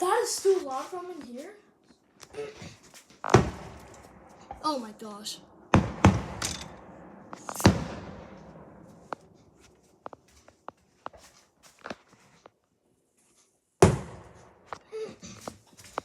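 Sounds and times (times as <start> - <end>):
fireworks bangs with echo: 5.6 - 9.1.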